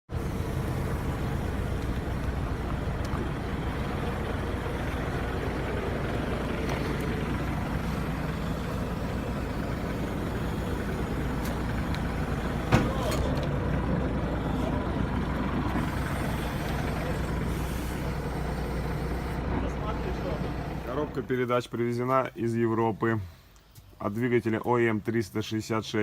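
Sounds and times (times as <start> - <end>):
diesel engine idling: 0.1 - 23.5.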